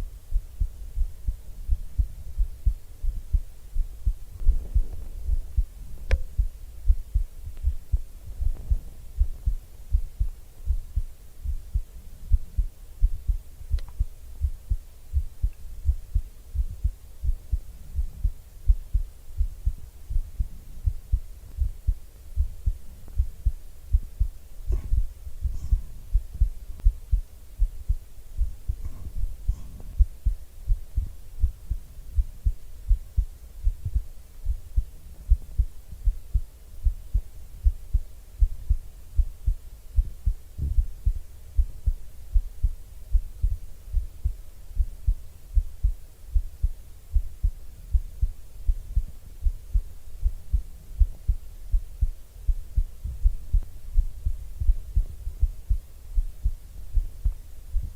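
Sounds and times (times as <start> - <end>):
faint hum: 0.0 - 57.9
heartbeat thumps: 0.0 - 57.9
faint clicks: 13.8 - 14.0.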